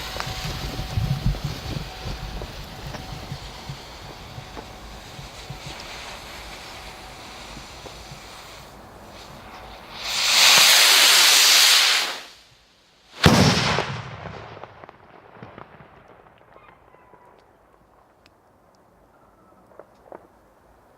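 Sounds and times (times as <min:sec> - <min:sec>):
firework bang echoing: 0:00.0 - 0:12.4, 0:13.1 - 0:17.2
rocket hissing: 0:00.0 - 0:15.8.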